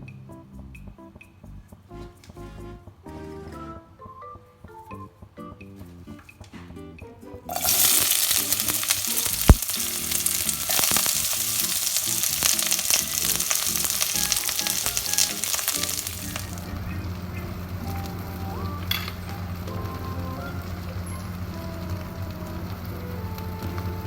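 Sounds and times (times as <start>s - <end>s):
food sizzling in hot oil: 7.5s - 24.0s.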